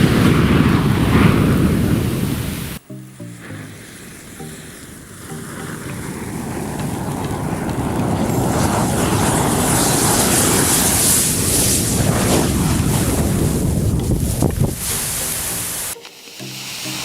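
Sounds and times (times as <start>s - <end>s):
match heads burning hiss: 14.1s - 17.0s.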